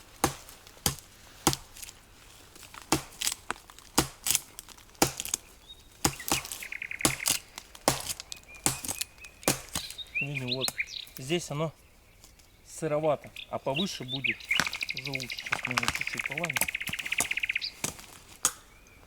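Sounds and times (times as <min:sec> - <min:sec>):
blade chopping wood: 0:00.0 - 0:01.9, 0:02.7 - 0:10.0.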